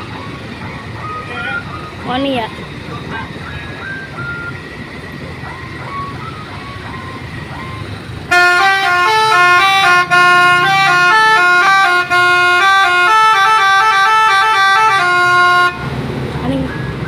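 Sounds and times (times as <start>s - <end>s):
bus engine rumble: 0.0s - 17.0s
musical air horn: 8.3s - 15.8s.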